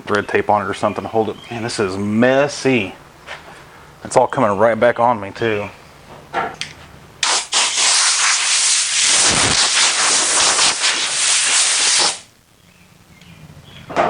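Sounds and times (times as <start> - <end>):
eraser wheel hissing on paint: 7.2 - 12.3.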